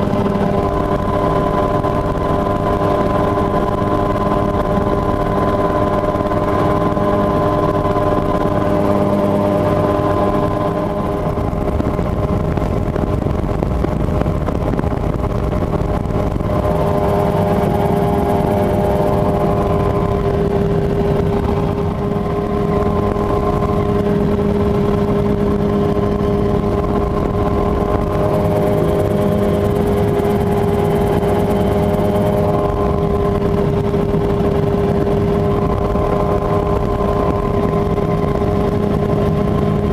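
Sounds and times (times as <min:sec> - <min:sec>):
helicopter engine drone: 0:00.0 - 0:39.9.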